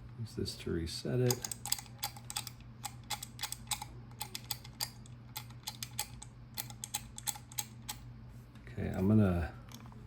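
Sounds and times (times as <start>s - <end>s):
combination dials clicking: 1.2s - 8.0s.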